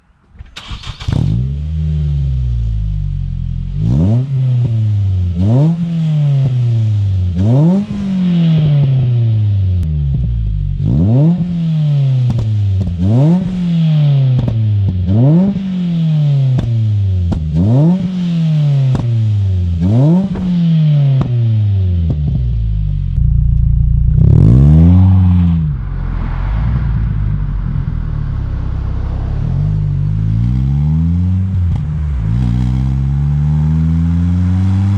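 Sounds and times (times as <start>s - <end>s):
car engine revving: 0.5s - 34.9s
exhaust crackles and pops: 19.8s - 32.6s.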